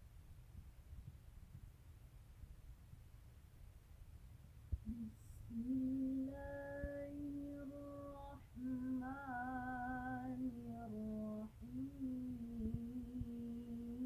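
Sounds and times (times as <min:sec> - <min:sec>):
girl reciting melodically: 0:04.9 - 0:14.0.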